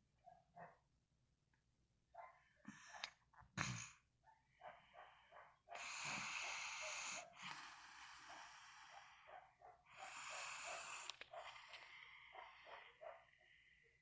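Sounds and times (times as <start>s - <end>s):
snoring breaths: 5.7s - 13.9s.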